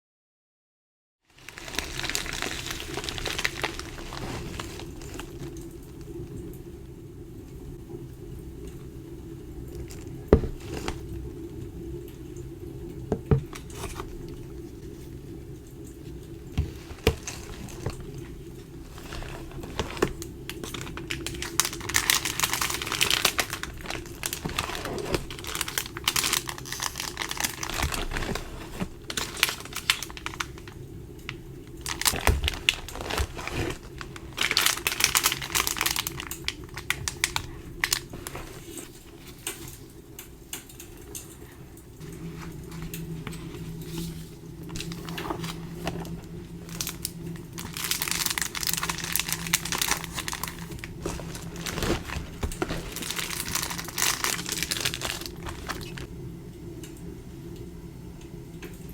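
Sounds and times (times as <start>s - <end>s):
packaging crinkling and rustling: 1.3s - 6.6s, 9.5s - 39.9s, 42.0s - 56.1s
steady low hum: 2.6s - 58.9s.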